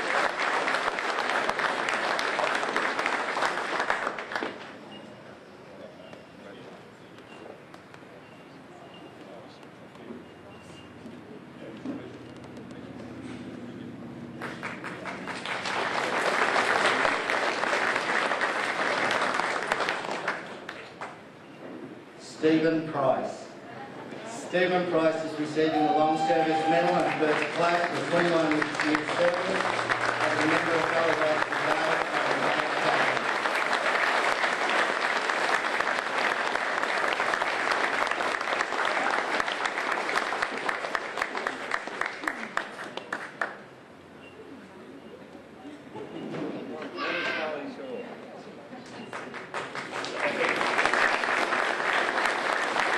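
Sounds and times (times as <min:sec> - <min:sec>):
audience applauding: 0:00.0 - 0:04.6, 0:14.3 - 0:21.2, 0:25.8 - 0:43.6, 0:49.0 - 0:52.9.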